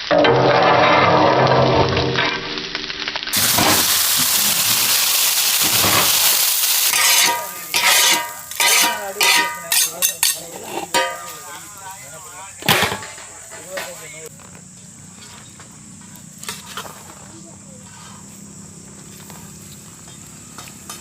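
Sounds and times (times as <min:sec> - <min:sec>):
metal spatula scraping pan: 0:00.0 - 0:02.7, 0:06.8 - 0:11.6
squid sizzling in oil: 0:01.5 - 0:12.7.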